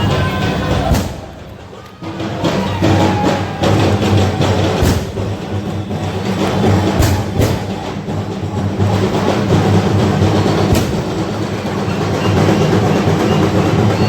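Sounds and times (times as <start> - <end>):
procession band drumming: 0.0 - 14.0
sharp drum strikes: 0.8 - 1.5, 3.0 - 5.6, 6.3 - 8.0, 10.6 - 11.6.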